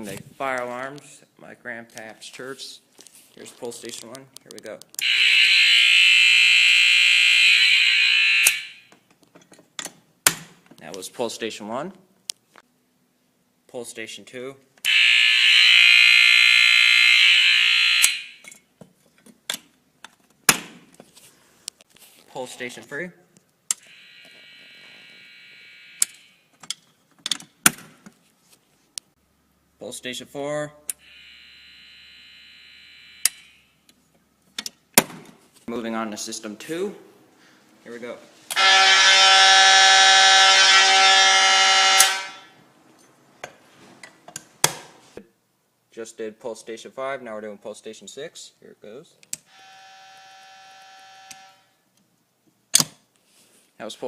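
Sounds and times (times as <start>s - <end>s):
fire alarm horn buzzing: 5.0s - 8.9s, 14.9s - 18.4s, 23.8s - 26.4s, 31.0s - 33.7s, 38.5s - 42.6s, 49.5s - 51.7s.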